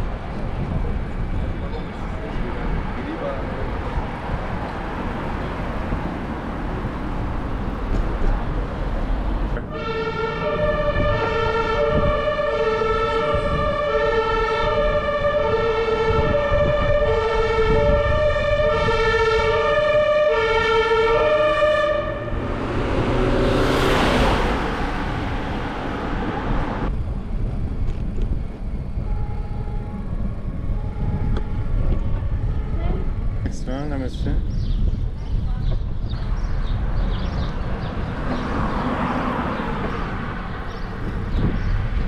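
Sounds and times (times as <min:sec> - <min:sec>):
wind and road noise: 0:00.0 - 0:42.0
two-tone emergency siren: 0:09.7 - 0:26.9
vehicle rushing past: 0:21.0 - 0:26.9.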